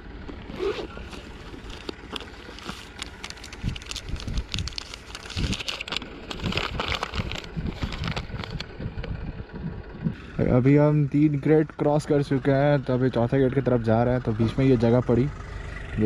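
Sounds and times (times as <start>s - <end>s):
road noise: 0.0s - 16.0s
crackles and knocks: 0.2s - 9.2s
wind rumbling on microphone: 3.4s - 10.5s.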